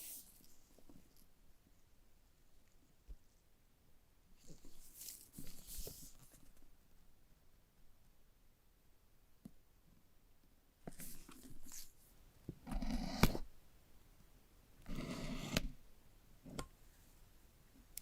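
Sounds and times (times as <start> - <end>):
packaging rustling and scraping: 4.4 - 6.5.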